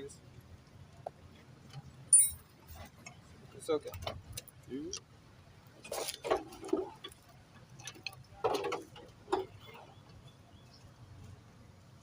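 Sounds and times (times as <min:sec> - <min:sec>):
tools and engine parts clicking: 0:01.7 - 0:03.2, 0:05.8 - 0:09.8.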